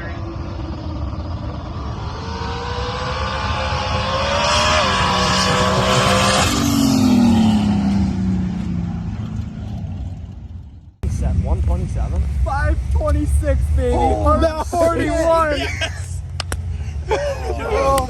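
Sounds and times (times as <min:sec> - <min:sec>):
drag car engine revving: 0:00.0 - 0:09.8.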